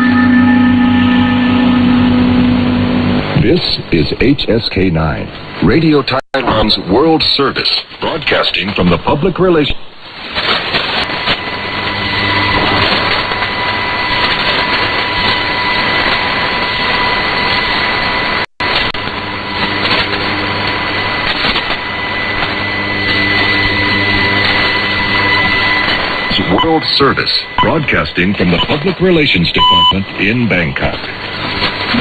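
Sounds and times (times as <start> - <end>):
high radio whistle: 0.0 - 3.6, 21.8 - 30.4
radio static hiss: 1.8 - 32.0.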